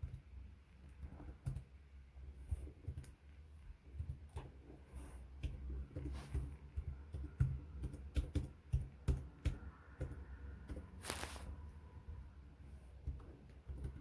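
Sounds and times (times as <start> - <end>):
small taps and clicks: 2.5 - 4.6, 5.3 - 10.9, 13.0 - 14.0.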